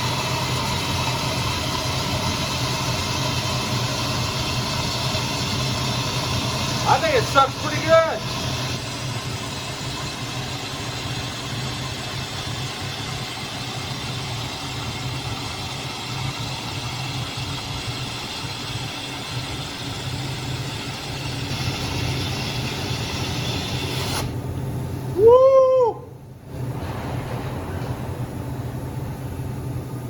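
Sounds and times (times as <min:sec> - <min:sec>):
air suction gun rushing: 0:00.0 - 0:24.4
low hum: 0:00.0 - 0:30.0.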